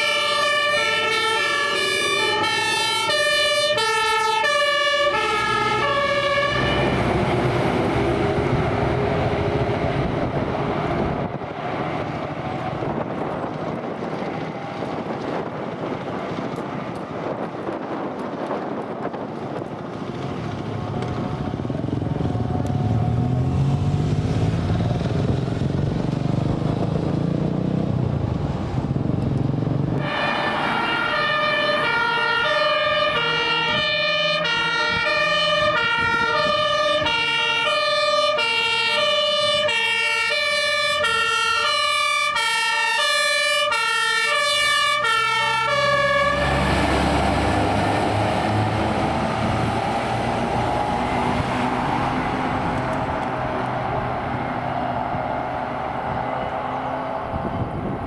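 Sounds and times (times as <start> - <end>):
fire engine two-tone siren: 0.0 - 11.5, 30.0 - 58.0
heavy vehicle engines driving by: 0.0 - 58.0.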